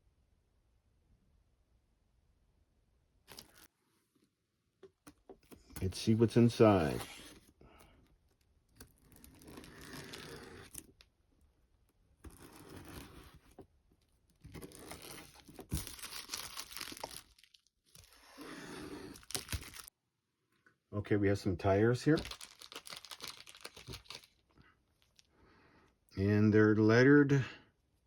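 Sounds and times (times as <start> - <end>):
packaging crinkling and rustling: 3.3 - 3.7, 14.4 - 18.4, 19.1 - 19.9, 22.1 - 25.3.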